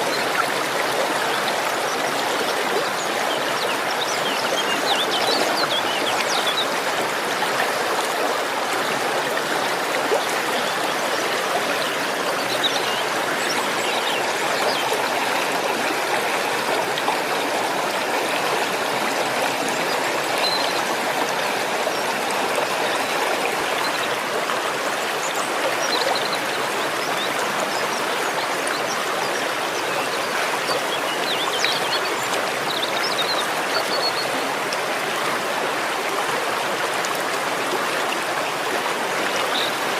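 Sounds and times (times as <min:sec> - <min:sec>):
waterfall rushing: 0:00.0 - 0:28.9.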